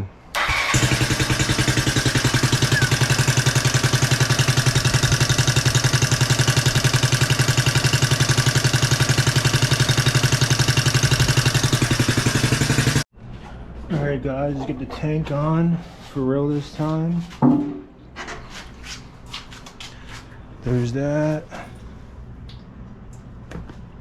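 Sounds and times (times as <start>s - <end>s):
motorcycle engine idling: 0.4s - 13.1s.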